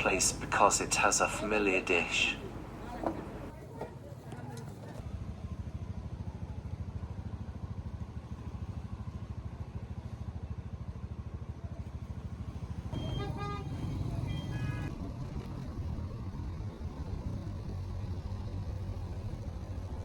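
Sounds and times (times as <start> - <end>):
traffic engine rumble: 0.0 - 6.4, 12.0 - 20.0
vehicle horn honking: 12.9 - 14.9.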